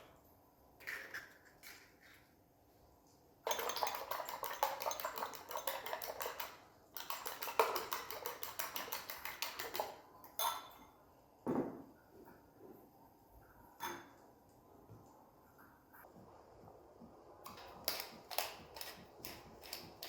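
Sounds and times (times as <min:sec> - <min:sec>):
utensils clinking against dishes: 0:03.5 - 0:10.9.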